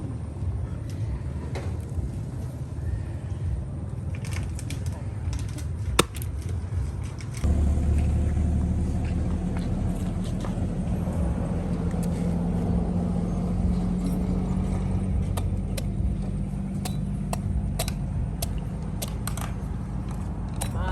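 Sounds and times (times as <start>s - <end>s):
low motor hum: 5.9s - 20.9s.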